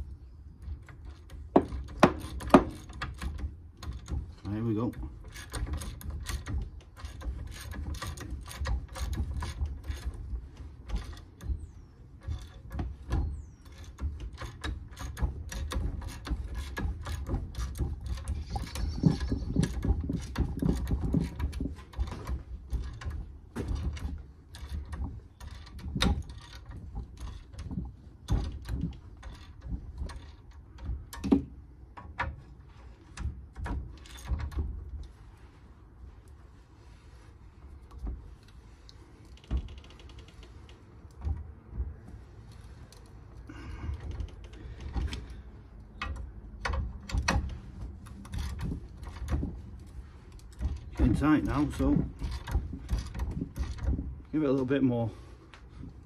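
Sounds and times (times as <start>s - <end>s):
metal knocks: 0.9s - 32.5s.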